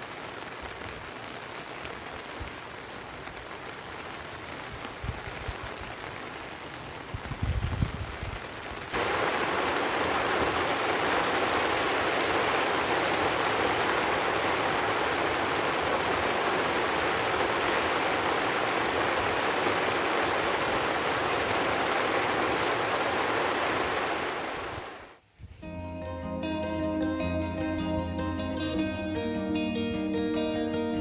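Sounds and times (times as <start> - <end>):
heavy rain falling: 0.0 - 25.2.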